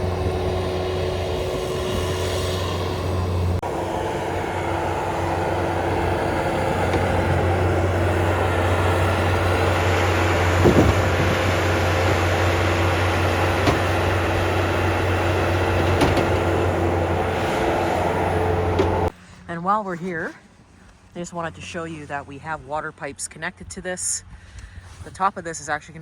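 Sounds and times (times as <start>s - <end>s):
engine running steadily: 0.0s - 23.0s
short knocks: 10.5s - 11.8s.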